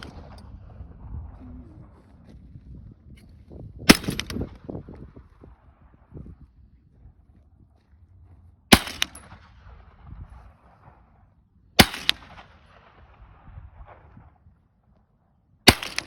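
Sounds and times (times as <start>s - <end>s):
rifle shots with echo: 0.0s - 1.4s, 3.8s - 6.1s, 8.7s - 14.4s, 15.6s - 16.0s.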